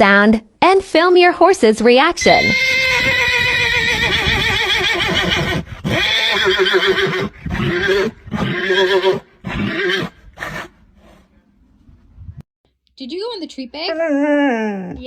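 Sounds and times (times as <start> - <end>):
horse whinnying: 2.2 - 11.2.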